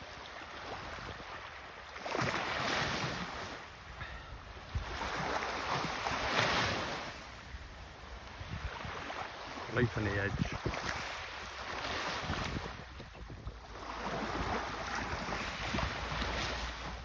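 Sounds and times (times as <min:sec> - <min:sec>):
small waves breaking on beach: 0:00.0 - 0:17.0
wind buffeting microphone: 0:03.8 - 0:17.0.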